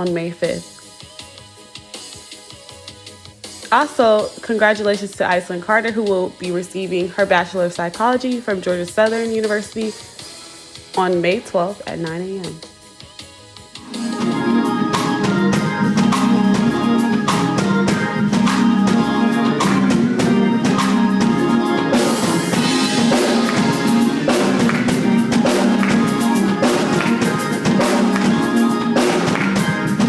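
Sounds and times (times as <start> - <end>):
worship band playing: 13.8 - 30.0.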